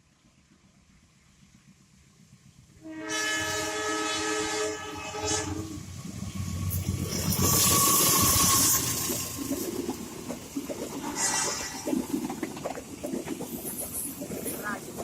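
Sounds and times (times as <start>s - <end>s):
train rumble and rail noise: 0.0s - 15.0s
train horn: 2.8s - 5.8s.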